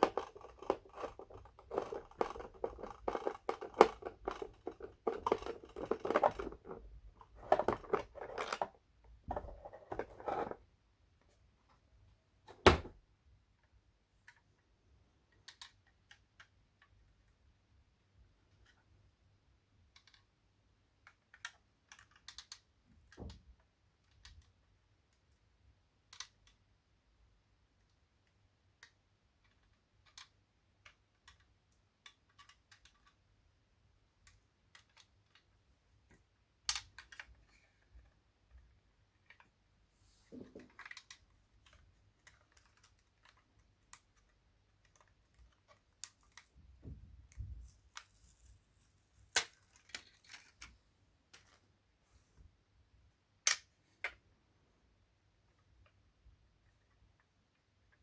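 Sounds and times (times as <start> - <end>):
hands handling toy car and packaging: 0.0 - 10.6, 40.3 - 46.6, 47.3 - 50.8.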